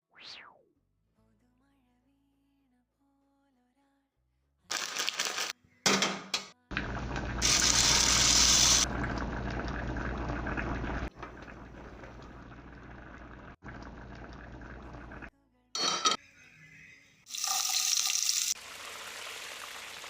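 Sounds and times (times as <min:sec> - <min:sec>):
water running into a pot: 0:06.7 - 0:15.3, 0:17.3 - 0:20.0.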